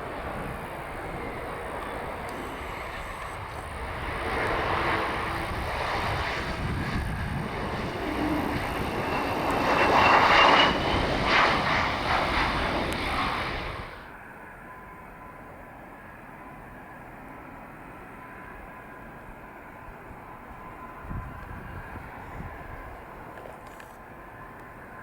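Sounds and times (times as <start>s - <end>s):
rising engine whine: 0.0s - 14.1s
jet engine noise: 0.0s - 25.0s
wind on microphone: 2.1s - 14.0s, 21.0s - 23.0s.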